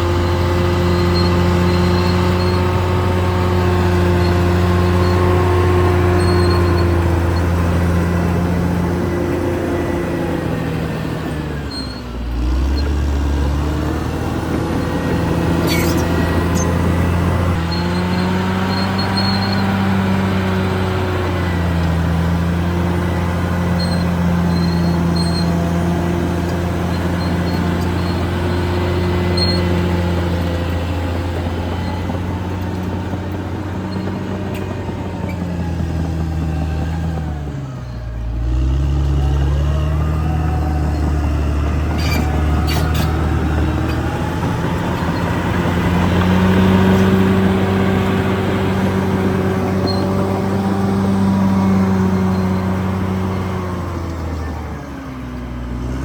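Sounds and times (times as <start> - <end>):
bulldozer diesel engine under load: 0.0 - 56.0.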